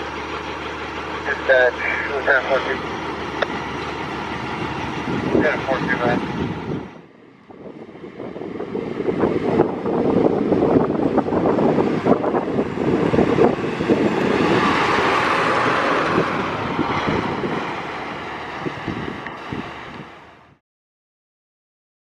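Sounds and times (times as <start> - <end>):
fire truck driving past: 0.0 - 20.6
wind buffeting microphone: 2.6 - 20.6.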